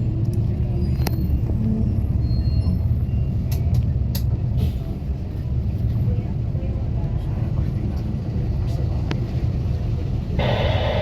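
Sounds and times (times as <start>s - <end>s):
jet engine cabin rumble: 2.6s - 11.0s.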